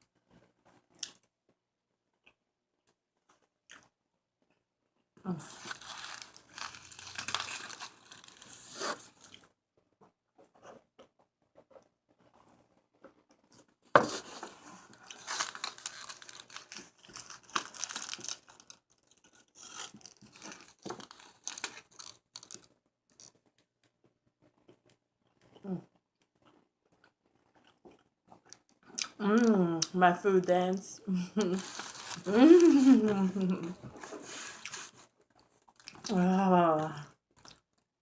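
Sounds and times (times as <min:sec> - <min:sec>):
paper wrapper crinkling: 0:05.3 - 0:09.5, 0:14.0 - 0:23.4, 0:31.4 - 0:36.0.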